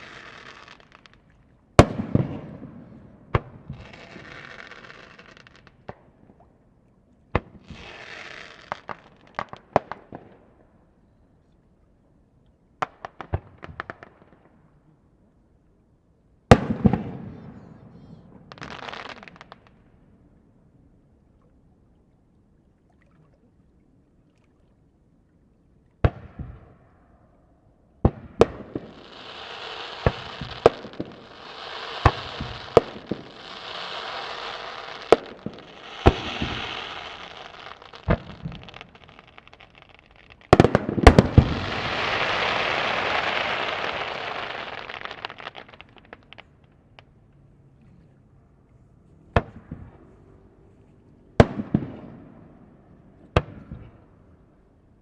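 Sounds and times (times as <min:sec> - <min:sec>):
fireworks booming: 0:01.8 - 0:06.2, 0:16.5 - 0:19.7, 0:28.0 - 0:39.7, 0:40.4 - 0:46.6, 0:49.3 - 0:50.1, 0:51.4 - 0:52.7.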